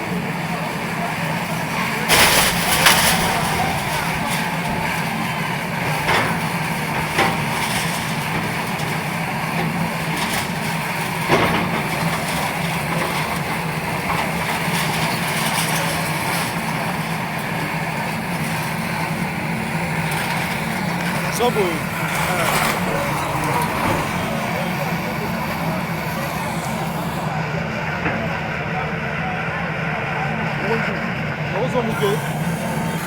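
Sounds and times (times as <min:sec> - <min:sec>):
heavy engine running: 0:00.0 - 0:33.0.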